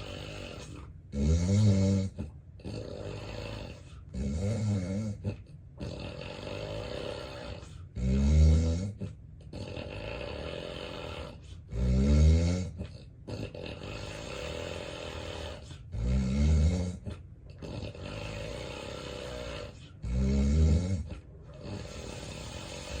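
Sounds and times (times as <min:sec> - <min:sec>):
man snoring heavily: 0:00.0 - 0:23.0
rushing breath: 0:21.0 - 0:23.0.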